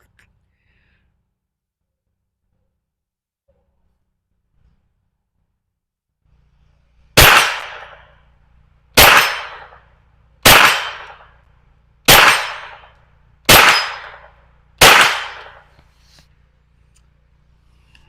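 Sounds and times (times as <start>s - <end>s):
gunshots with echo: 7.2s - 8.1s, 9.0s - 9.8s, 10.4s - 11.3s, 12.1s - 12.9s, 13.5s - 15.6s.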